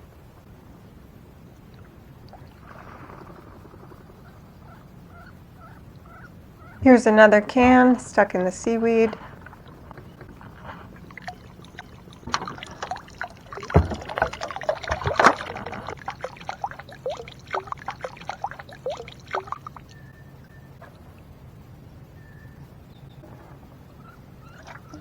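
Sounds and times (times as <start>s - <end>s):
water splashing and trickling: 4.7s - 20.2s, 24.4s - 25.0s
sharp knocks: 12.3s - 16.0s.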